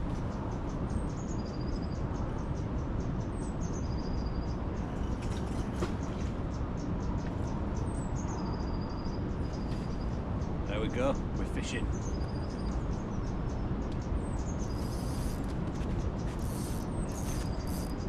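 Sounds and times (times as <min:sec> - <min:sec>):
small songbird singing: 0:06.1 - 0:18.0.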